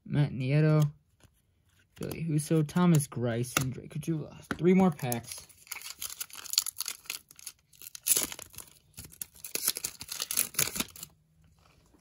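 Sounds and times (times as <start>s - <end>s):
wrapper tearing and crinkling: 5.4s - 11.1s.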